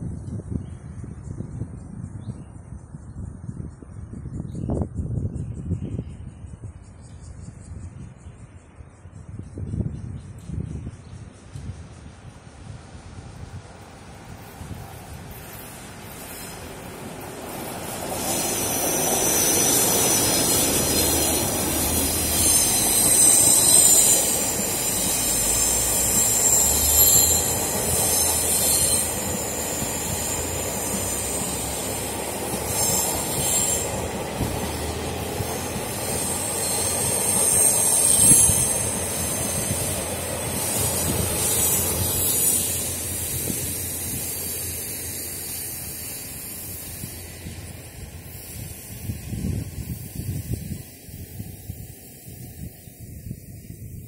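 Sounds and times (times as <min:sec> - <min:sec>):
train wheels running on rails: 0:02.8 - 0:54.0
high-pitched wheel squeal: 0:17.4 - 0:47.6.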